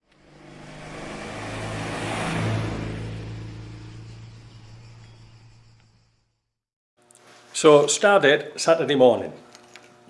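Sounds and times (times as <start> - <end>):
vehicle engine passing by: 0.0 - 6.2.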